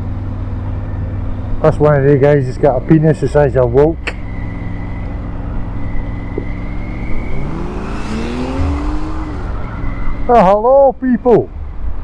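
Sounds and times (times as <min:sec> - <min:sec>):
road noise: 0:00.0 - 0:12.0
car engine revving: 0:01.3 - 0:10.6.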